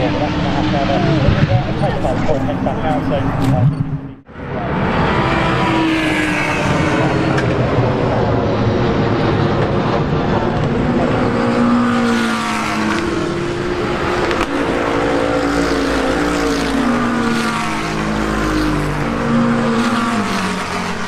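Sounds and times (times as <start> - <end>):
race car engine at full throttle: 0.0 - 21.0.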